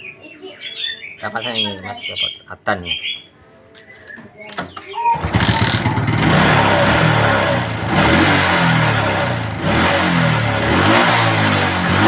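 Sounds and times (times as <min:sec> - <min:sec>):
motorcycle engine revving: 0:05.2 - 0:12.0.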